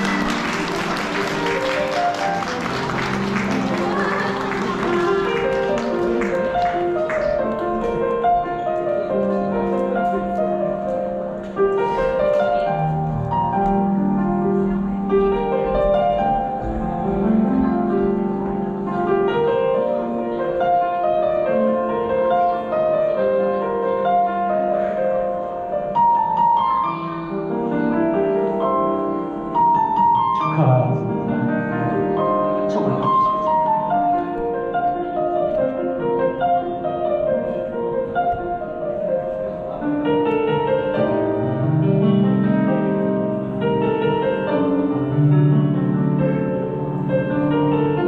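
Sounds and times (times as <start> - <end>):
piano melody: 0.0 - 48.0.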